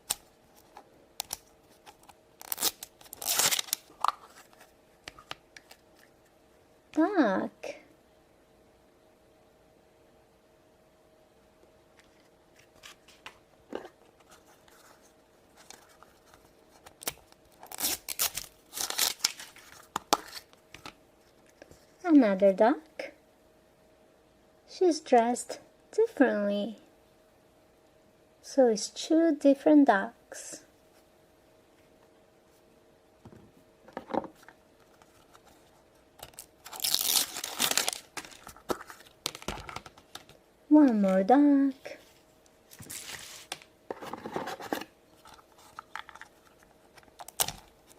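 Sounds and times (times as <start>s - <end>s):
packaging tearing: 1.2s - 4.4s, 17.0s - 20.5s, 36.2s - 39.5s, 47.2s - 47.9s
plastic packaging crinkling: 1.2s - 4.7s, 15.6s - 20.5s, 34.8s - 40.4s, 45.2s - 47.9s.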